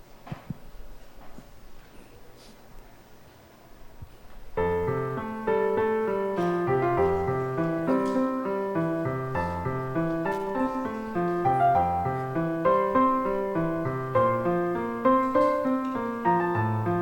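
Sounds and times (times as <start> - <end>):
piano playing hymn accompaniment: 4.5 - 17.0.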